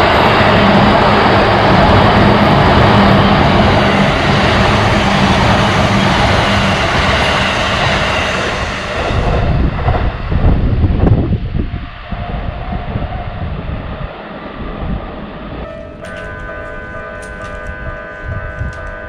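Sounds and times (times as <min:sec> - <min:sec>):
train rushing past: 0:00.0 - 0:19.0
low hum: 0:09.2 - 0:19.0.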